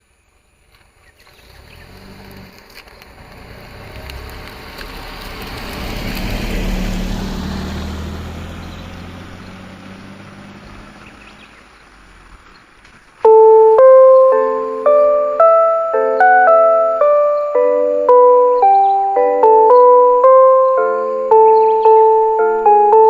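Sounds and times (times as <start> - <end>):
vehicle passing by: 1.2 - 12.9.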